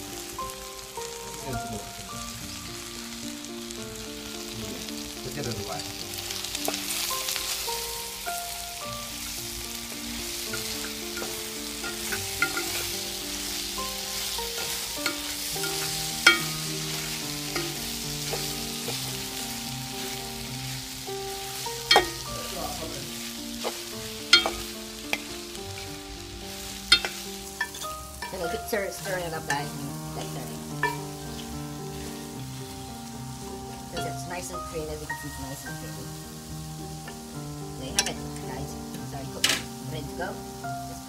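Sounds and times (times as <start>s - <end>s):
food sizzling in a frying pan: 0.0s - 41.0s
utensil knocking against pan: 10.5s - 12.8s, 14.6s - 16.6s, 23.6s - 25.3s.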